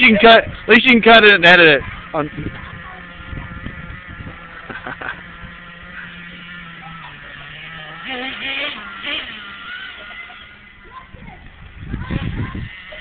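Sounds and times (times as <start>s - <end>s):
small nitro engine idling: 0.0s - 13.0s.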